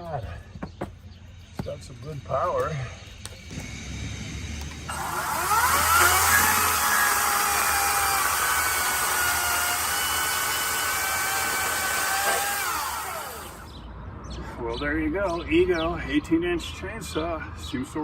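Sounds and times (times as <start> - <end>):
electric chainsaw motor whining: 3.5 - 13.7.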